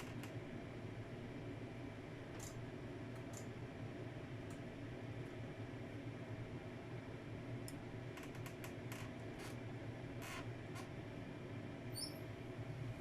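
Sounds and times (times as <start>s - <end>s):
microwave oven humming: 0.0s - 13.0s
faint high chirp: 11.9s - 12.3s.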